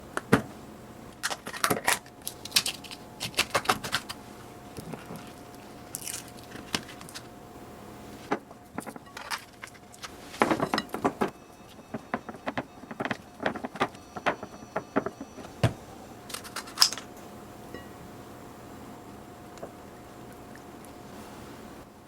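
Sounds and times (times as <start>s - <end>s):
faint steady hum: 0.0s - 22.0s
kitchen items clicking and clinking: 1.2s - 7.3s, 8.3s - 17.2s.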